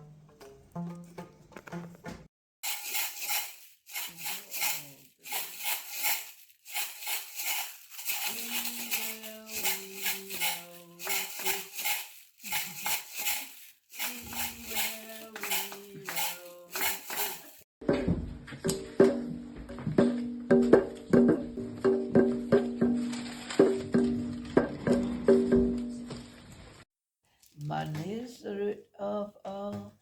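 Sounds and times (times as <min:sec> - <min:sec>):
beads rattling in shaker: 0:02.6 - 0:17.7.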